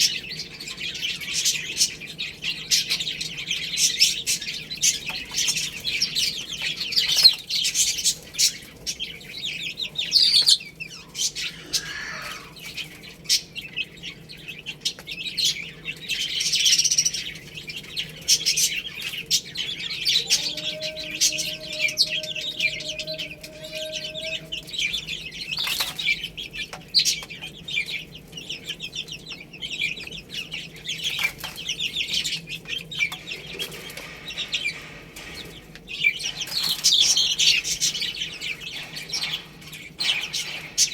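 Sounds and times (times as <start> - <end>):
baby chicks chirping: 0.0 - 40.9.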